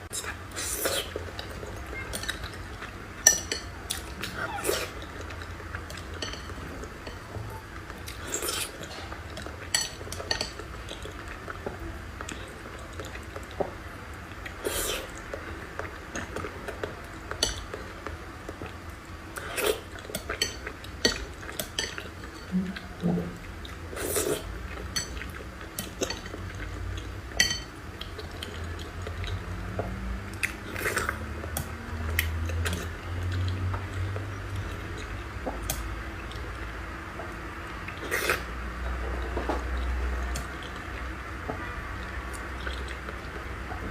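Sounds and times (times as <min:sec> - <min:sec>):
chewing: 0:00.1 - 0:36.6, 0:42.0 - 0:43.5
cutlery clinking on dishes: 0:27.4 - 0:27.7.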